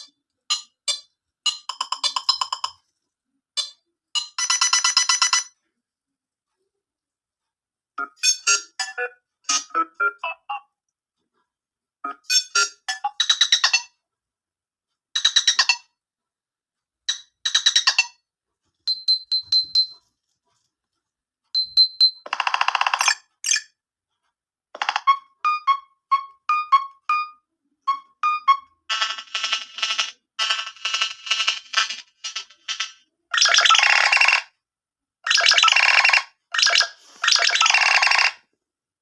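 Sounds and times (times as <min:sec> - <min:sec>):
short beeps: 0:18.9 - 0:20.0, 0:21.6 - 0:22.2.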